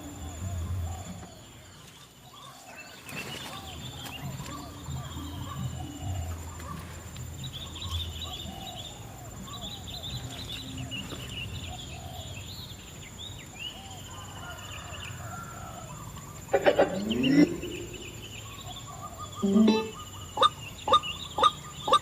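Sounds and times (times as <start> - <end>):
small birds chittering: 0.0 - 22.0
waterhen calls: 16.4 - 22.0.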